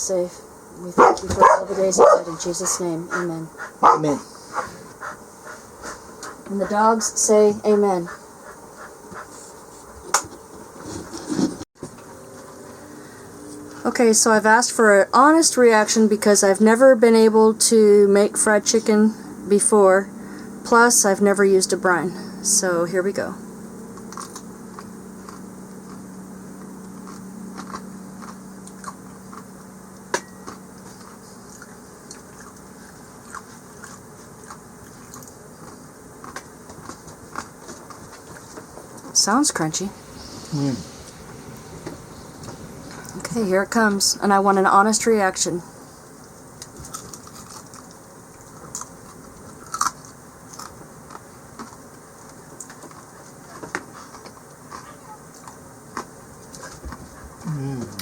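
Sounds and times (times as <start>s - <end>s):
steady low hum: 0.0s - 58.0s
crunchy chewing of fried chicken: 23.9s - 39.0s, 46.2s - 58.0s
crispy chicken crunching: 24.0s - 26.2s, 46.6s - 51.8s.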